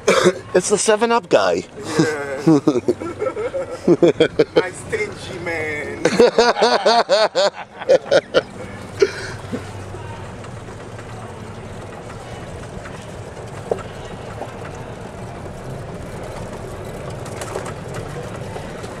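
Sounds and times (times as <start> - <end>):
vehicle engine humming: 0.0 - 19.0.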